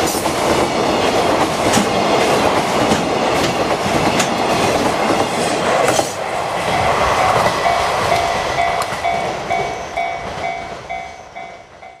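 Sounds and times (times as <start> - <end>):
train running noise: 0.0 - 12.0
level crossing warning bell: 6.6 - 12.0.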